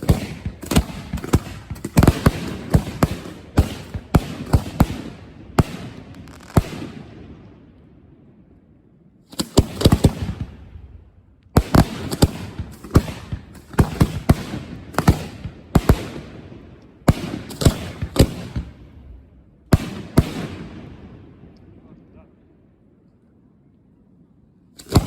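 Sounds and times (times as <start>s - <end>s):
firework shells bursting: 5.6s - 6.9s.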